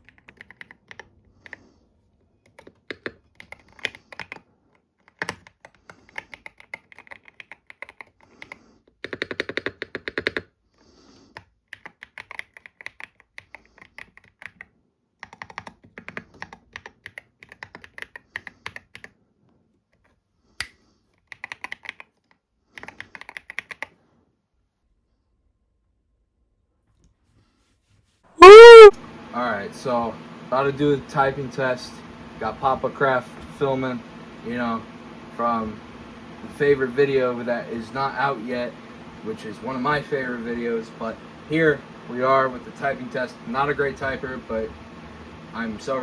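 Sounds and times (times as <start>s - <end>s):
mechanical keyboard typing: 0.0s - 1.1s, 5.0s - 8.2s, 9.0s - 10.4s, 11.7s - 19.1s, 21.3s - 22.1s, 22.8s - 23.9s.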